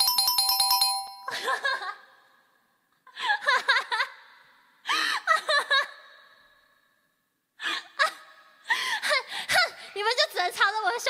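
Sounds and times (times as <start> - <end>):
bell-like chime: 0.0 - 1.4.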